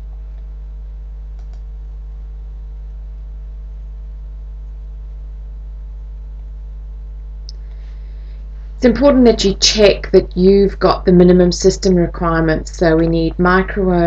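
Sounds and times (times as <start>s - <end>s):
low electrical hum: 0.0s - 14.0s
computer mouse clicks: 1.3s - 1.7s.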